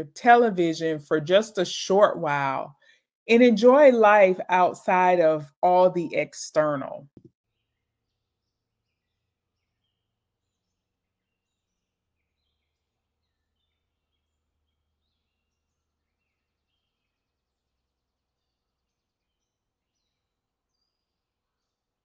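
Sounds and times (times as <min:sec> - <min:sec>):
faint birds chirping: 0:07.5 - 0:22.0.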